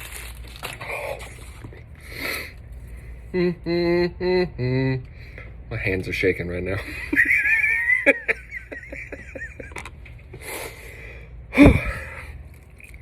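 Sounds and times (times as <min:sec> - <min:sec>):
man wheezing and whimpering: 0:11.5 - 0:12.4.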